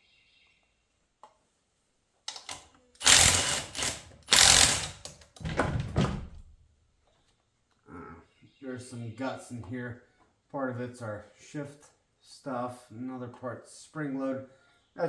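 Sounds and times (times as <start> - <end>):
power tool backing out bolts: 2.3 - 5.6.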